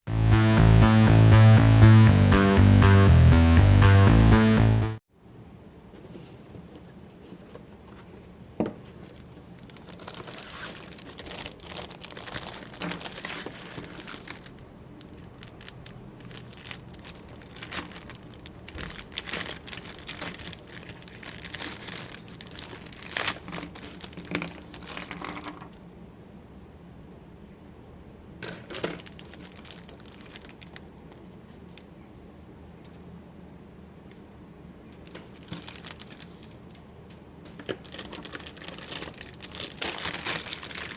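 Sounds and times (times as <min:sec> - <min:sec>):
plastic and cardboard crinkling: 0:06.0 - 0:25.8, 0:28.4 - 0:31.9, 0:35.0 - 0:36.8, 0:37.5 - 0:40.9.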